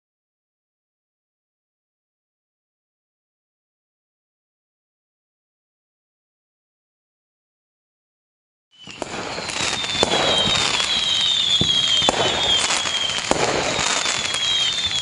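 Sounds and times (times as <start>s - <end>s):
falling firework whistles: 8.7s - 15.0s
fireworks bangs: 8.8s - 15.0s
fireworks crackling: 8.8s - 15.0s.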